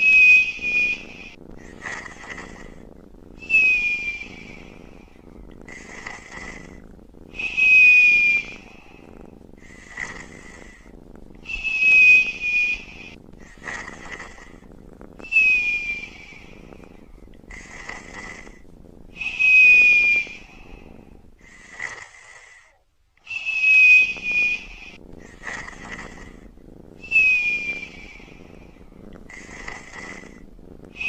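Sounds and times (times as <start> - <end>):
whistling breath: 0.0 - 2.8, 3.4 - 14.5, 15.2 - 31.0
man snoring: 3.4 - 14.5, 17.5 - 18.6, 19.2 - 22.8, 23.4 - 31.0.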